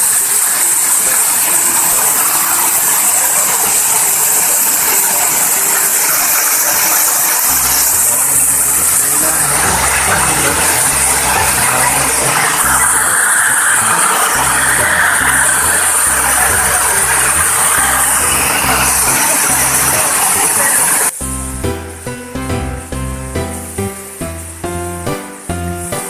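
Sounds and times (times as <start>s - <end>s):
waterfall roar: 0.0s - 21.2s.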